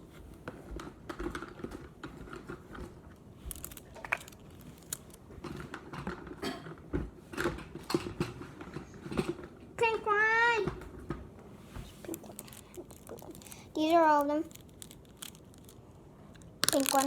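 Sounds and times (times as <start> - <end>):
bangle bracelets clicking: 12.1 - 15.8.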